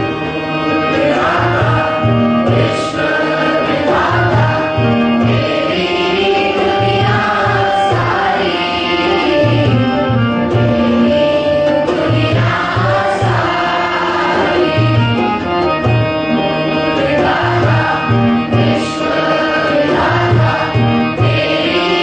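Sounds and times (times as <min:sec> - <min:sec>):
group of voices singing: 0:00.0 - 0:22.0
held keyboard chords: 0:00.0 - 0:22.0
hand drum beat: 0:09.4 - 0:22.0.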